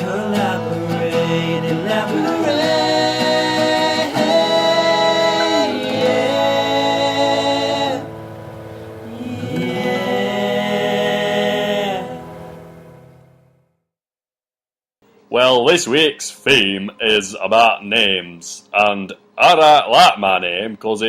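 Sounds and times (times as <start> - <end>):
held sung chords: 0.0 - 13.5.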